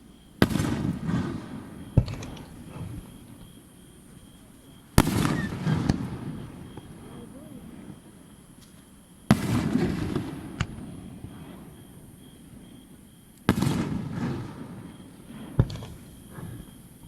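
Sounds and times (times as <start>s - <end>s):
sharp firework cracks: 0.4s - 3.0s, 5.0s - 6.9s, 13.4s - 14.6s
firework shells bursting: 0.4s - 3.5s.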